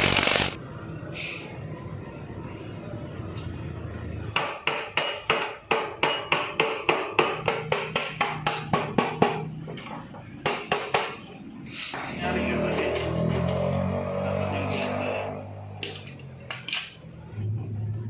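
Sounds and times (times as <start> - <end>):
hammer striking metal: 4.4 - 9.5.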